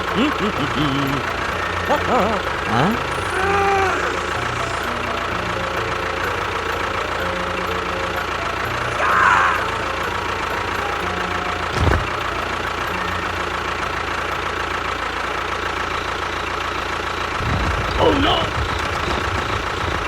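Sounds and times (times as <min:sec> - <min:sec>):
engine running: 0:00.0 - 0:20.0.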